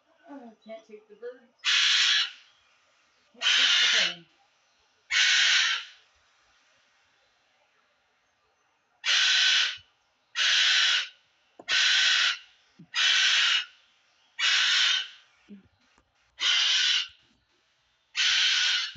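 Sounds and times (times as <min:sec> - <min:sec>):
pet bird screaming: 0:01.6 - 0:02.4, 0:03.4 - 0:04.2, 0:05.1 - 0:06.0, 0:09.0 - 0:09.8, 0:10.4 - 0:11.1, 0:11.7 - 0:13.7, 0:14.4 - 0:15.2, 0:16.4 - 0:17.2, 0:18.2 - 0:18.9.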